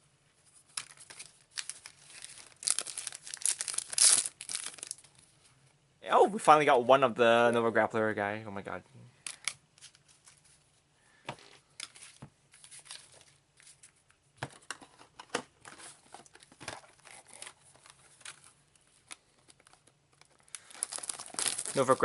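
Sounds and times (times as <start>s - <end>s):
foil wrappers crinkling and tearing: 0.8s - 5.1s, 20.2s - 22.0s.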